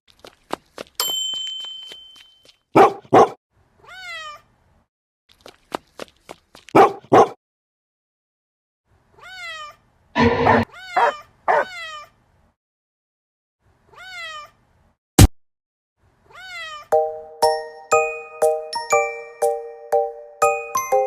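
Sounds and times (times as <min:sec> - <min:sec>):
cat meowing: 0:03.8 - 0:04.5, 0:09.2 - 0:09.8, 0:10.6 - 0:12.2, 0:13.9 - 0:14.6, 0:16.3 - 0:16.9
bell-like chiming tones: 0:17.0 - 0:21.0.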